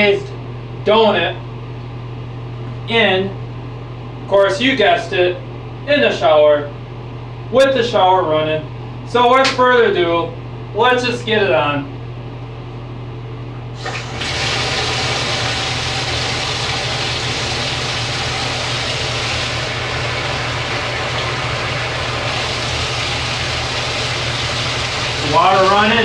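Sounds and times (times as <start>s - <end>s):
shower water spraying: 13.8s - 26.0s.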